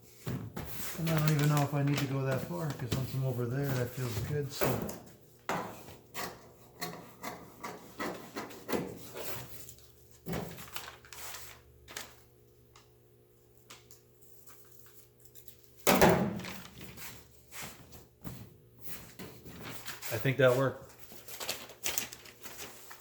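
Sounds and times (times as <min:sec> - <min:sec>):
paper rustling against metal panel: 0:00.7 - 0:05.1, 0:07.7 - 0:12.2, 0:16.1 - 0:17.8, 0:19.0 - 0:23.0.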